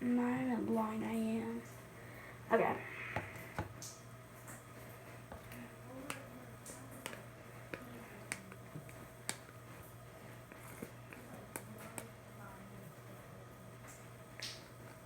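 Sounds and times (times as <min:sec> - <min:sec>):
low steady hum: 0:00.0 - 0:15.0
sticky soap clicks and smacks: 0:05.3 - 0:09.6, 0:10.5 - 0:12.2, 0:13.9 - 0:14.8.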